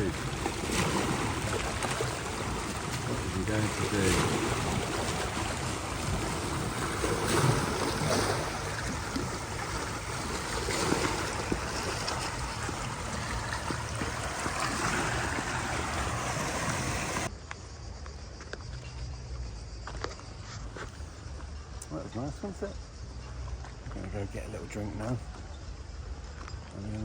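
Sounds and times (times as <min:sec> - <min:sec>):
sea water rushing: 0:00.0 - 0:17.3
wind: 0:00.0 - 0:27.0.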